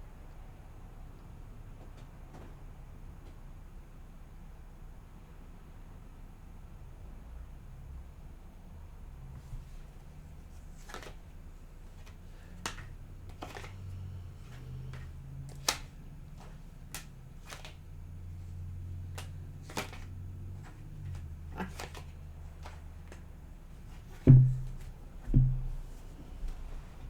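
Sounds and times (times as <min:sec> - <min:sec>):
cards snapping and slapping: 0:10.7 - 0:11.3, 0:11.9 - 0:17.9, 0:19.0 - 0:23.3.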